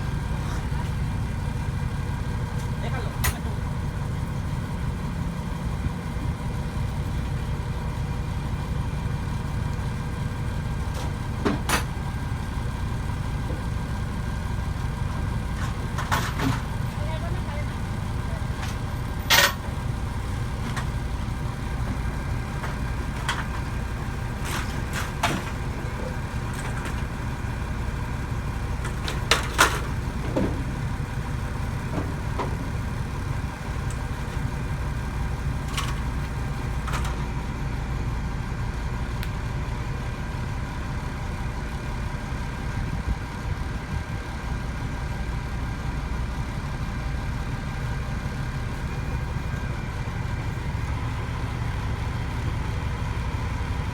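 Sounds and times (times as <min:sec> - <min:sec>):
engine idling: 0:00.0 - 0:53.9
sharp clanks and knocks: 0:10.9 - 0:12.2, 0:15.4 - 0:16.9, 0:18.4 - 0:27.9, 0:28.6 - 0:33.1, 0:33.7 - 0:37.2.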